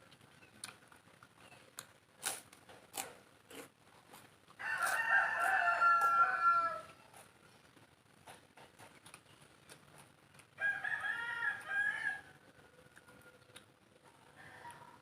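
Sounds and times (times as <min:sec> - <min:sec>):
sharp eating clicks: 0:00.0 - 0:06.2, 0:07.0 - 0:10.6, 0:12.8 - 0:14.8
rooster crowing: 0:04.6 - 0:07.0, 0:10.6 - 0:12.4, 0:14.4 - 0:15.0.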